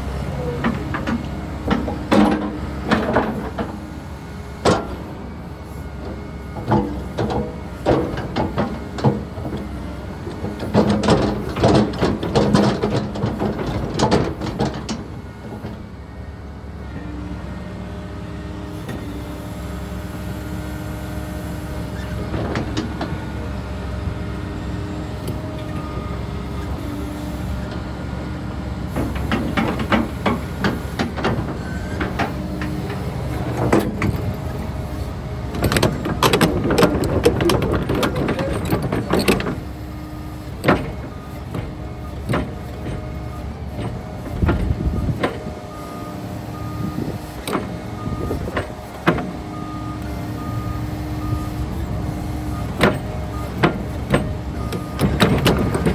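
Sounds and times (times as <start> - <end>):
excavator engine and hydraulics: 0.0 - 55.9
metal clanking and scraping: 28.9 - 39.6.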